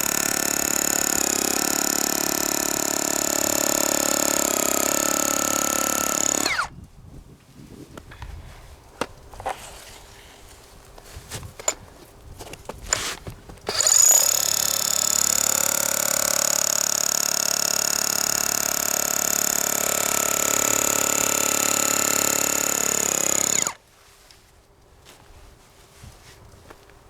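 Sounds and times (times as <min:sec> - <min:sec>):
hammer drill boring into ground: 0:00.0 - 0:06.7, 0:13.7 - 0:23.8.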